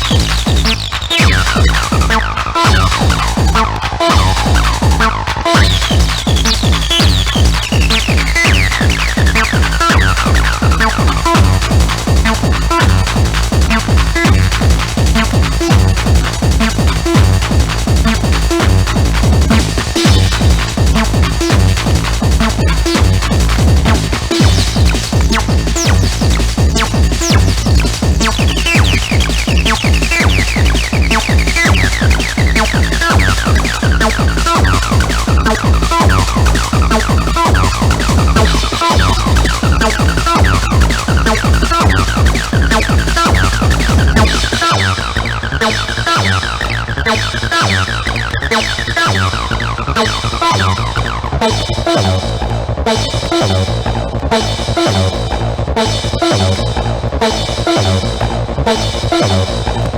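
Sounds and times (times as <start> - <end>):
four-on-the-floor kick drum: 0.0 - 45.0
falling synth line: 0.0 - 52.4.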